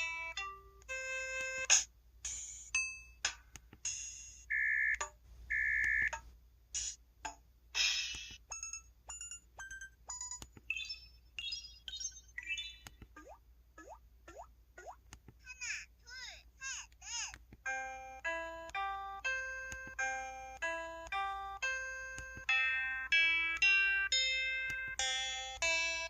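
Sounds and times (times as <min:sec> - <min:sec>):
phone keypad beeps and chimes: 0:03.9 - 0:06.2, 0:17.6 - 0:26.0.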